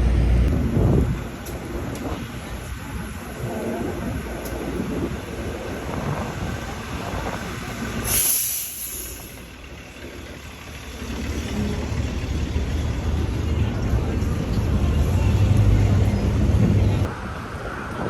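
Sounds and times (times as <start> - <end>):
low vehicle rumble: 0.0 - 18.0
loud air hiss burst: 8.0 - 9.4.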